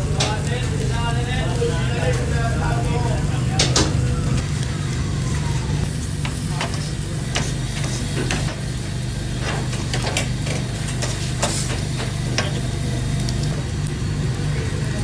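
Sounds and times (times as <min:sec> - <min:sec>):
chicken sizzling in a pan: 0:00.0 - 0:15.0
steady low hum: 0:00.0 - 0:15.0.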